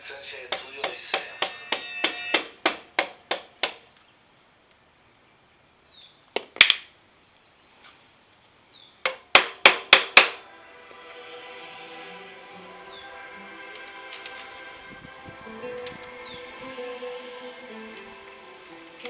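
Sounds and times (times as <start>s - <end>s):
sharp ringing knocks: 0.5s - 3.8s.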